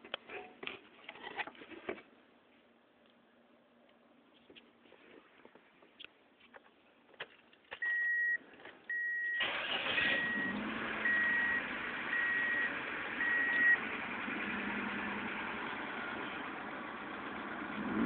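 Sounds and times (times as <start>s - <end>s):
dashboard warning chime beeping: 7.8s - 13.8s
car engine starting and idling: 7.8s - 18.0s.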